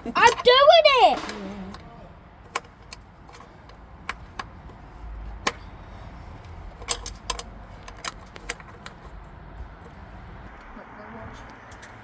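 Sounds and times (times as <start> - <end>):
hand tools tapping metal: 0.0 - 1.9.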